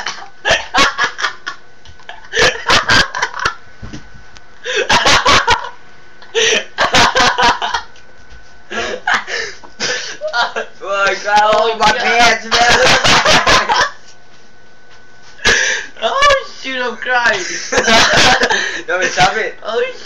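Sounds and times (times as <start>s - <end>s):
hiccupping laughter: 0.0s - 3.6s, 4.7s - 7.9s, 12.5s - 14.0s, 17.6s - 18.6s.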